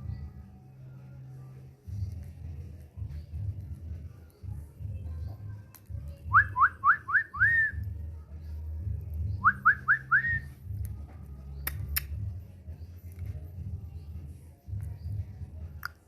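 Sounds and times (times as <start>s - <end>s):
sharp clicks: 11.6s - 12.2s.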